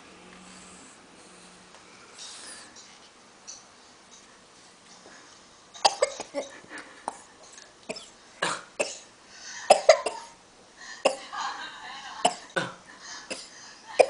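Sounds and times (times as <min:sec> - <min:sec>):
person coughing: 0:09.7 - 0:10.4, 0:11.0 - 0:11.2, 0:12.2 - 0:14.0.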